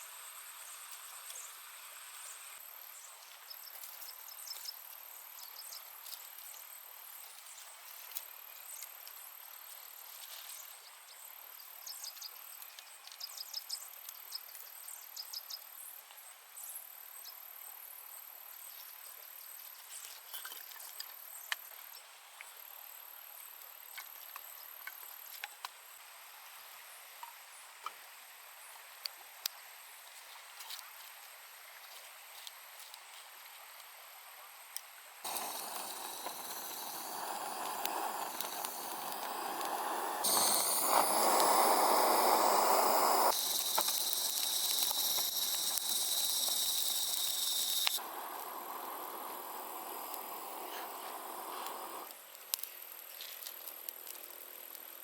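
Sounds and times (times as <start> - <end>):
insects chirping: 35.2 - 52.1.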